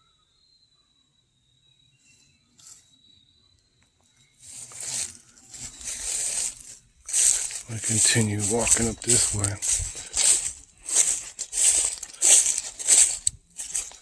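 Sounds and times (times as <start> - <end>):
faint insect trill: 0.0 - 14.0
footsteps crunching through dry leaves: 4.4 - 14.0.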